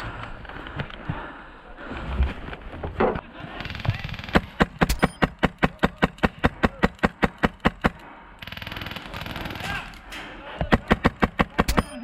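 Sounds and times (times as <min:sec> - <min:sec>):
airsoft gun firing rapidly: 0:03.5 - 0:10.0, 0:10.7 - 0:12.0.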